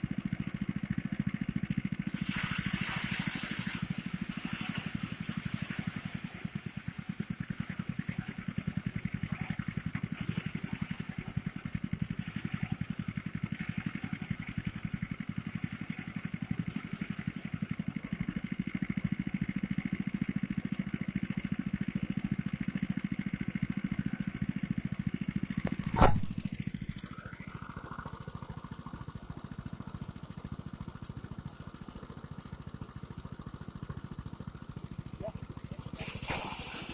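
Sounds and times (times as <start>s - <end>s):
thresher engine running: 0.0s - 36.9s
sharp knock: 25.7s - 26.4s.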